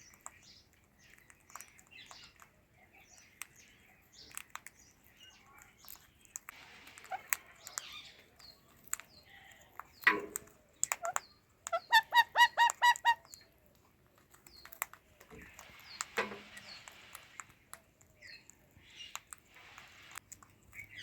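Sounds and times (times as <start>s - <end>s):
parrots chirping and clicking: 0.0s - 21.0s
loud repeated parrot calls: 11.8s - 13.2s.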